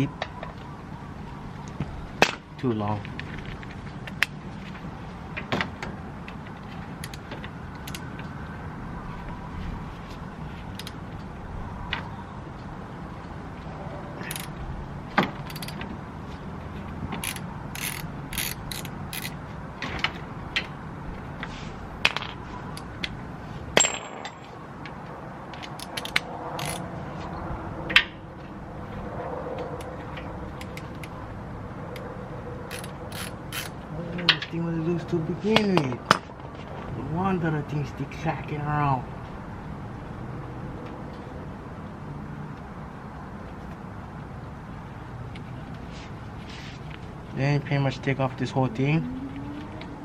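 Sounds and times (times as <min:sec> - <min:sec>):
socket ratchet clicking: 0:15.5 - 0:15.8, 0:17.2 - 0:19.4, 0:25.6 - 0:26.8, 0:32.7 - 0:33.8.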